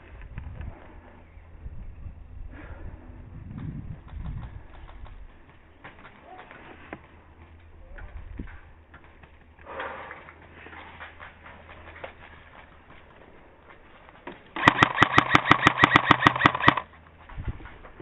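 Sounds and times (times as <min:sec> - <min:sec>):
airsoft gun firing bursts: 0:14.5 - 0:17.0
gearbox motor whirring: 0:14.6 - 0:16.9.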